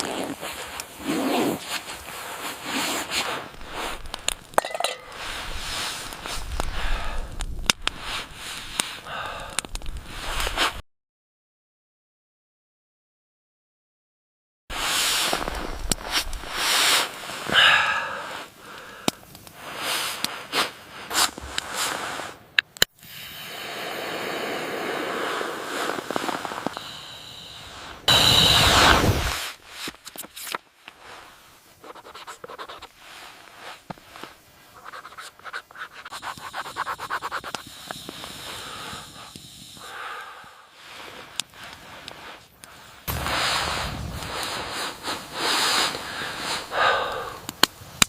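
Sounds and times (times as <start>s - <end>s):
rustling and scraping: 0.0s - 6.7s, 28.6s - 38.4s, 40.9s - 46.7s
crackling and popping: 0.0s - 10.8s, 14.7s - 23.0s, 24.9s - 48.0s
loud rushing noise: 28.1s - 29.6s, 43.1s - 45.3s.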